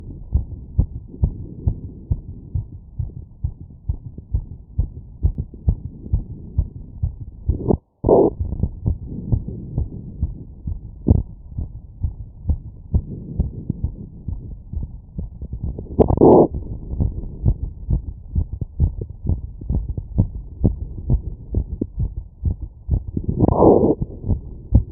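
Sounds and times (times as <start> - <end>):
heartbeat through stethoscope: 0.0 - 24.9.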